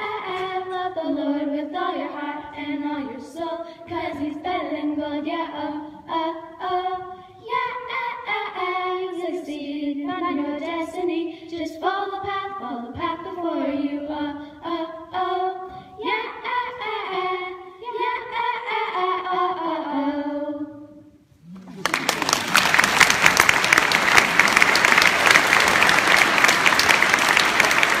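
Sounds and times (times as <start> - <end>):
girls singing a cappella: 0.0 - 21.3
applause: 21.5 - 28.0.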